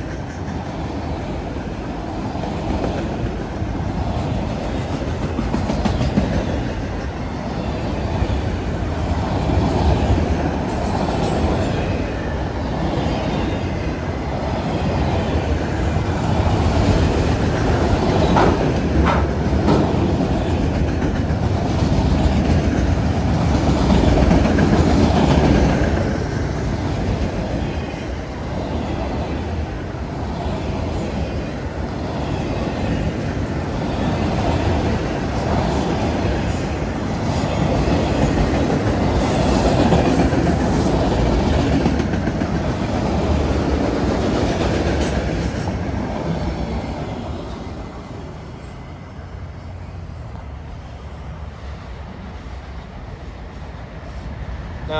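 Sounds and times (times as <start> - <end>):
freight train cars rolling: 0.0 - 54.9
wheels clacking over rail joints: 15.8 - 27.8, 33.1 - 47.4.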